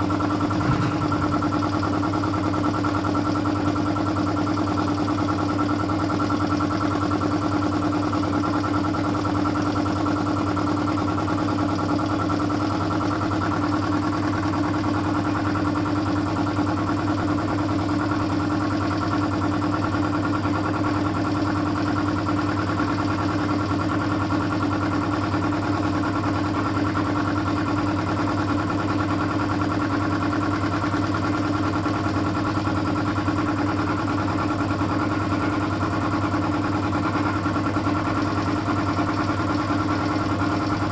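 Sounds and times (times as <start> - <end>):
air compressor humming: 0.4 - 2.5.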